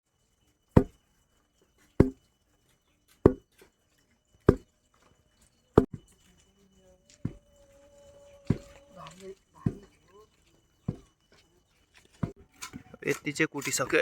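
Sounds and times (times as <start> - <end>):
pestle thudding in a mortar: 0.8 - 1.0, 2.0 - 2.2, 3.2 - 3.5, 4.5 - 4.7, 5.8 - 6.1, 8.4 - 8.8, 9.6 - 10.0.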